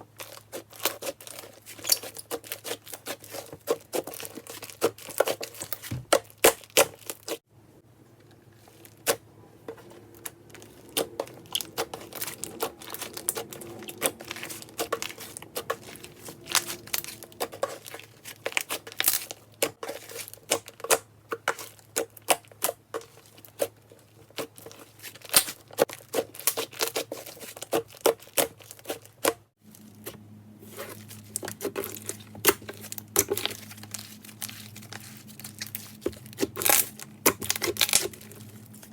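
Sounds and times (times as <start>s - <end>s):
faint steady hum: 29.6s - 38.9s.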